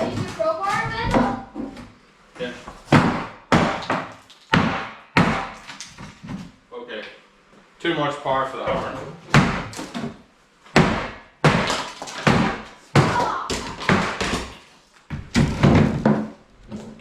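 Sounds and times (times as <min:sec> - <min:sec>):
heavy blows smashing countertop: 0:10.8 - 0:14.6, 0:15.2 - 0:16.4.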